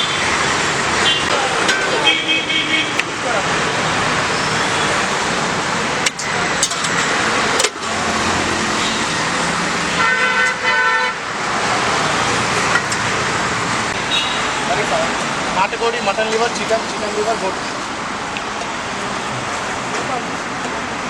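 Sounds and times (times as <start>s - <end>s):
road traffic noise: 0.0s - 21.0s
vehicle horn toots: 9.9s - 11.3s, 14.0s - 14.6s.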